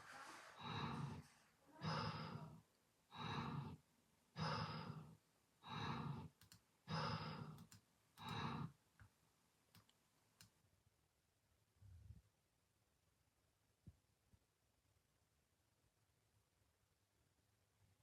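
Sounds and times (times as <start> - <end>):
buzzing snoring: 0.6 - 1.2, 1.8 - 3.8, 4.4 - 6.3
faint clicks: 6.2 - 6.7, 7.4 - 8.4, 9.7 - 10.6.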